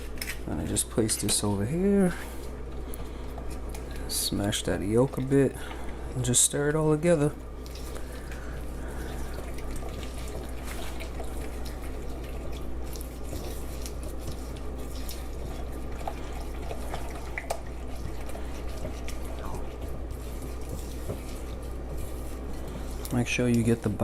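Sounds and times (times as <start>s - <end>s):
wet squelching of stirring: 0.0s - 24.0s
utensil clicking and scraping bowl: 7.6s - 24.0s.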